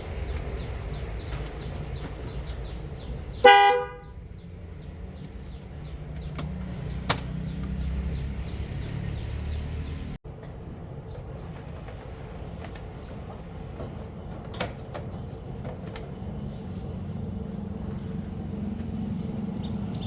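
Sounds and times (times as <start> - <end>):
car horn toot: 3.4 - 4.2.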